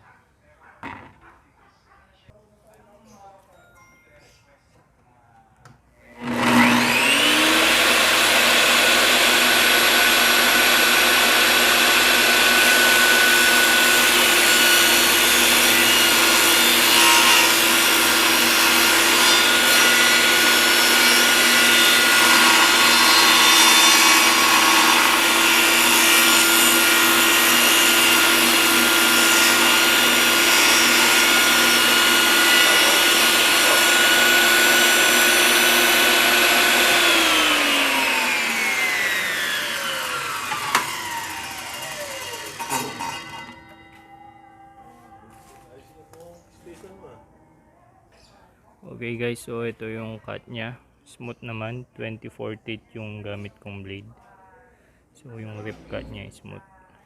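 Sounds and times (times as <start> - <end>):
saw blade spinning up whine: 6.2 - 44.2
table saw running: 6.2 - 44.3.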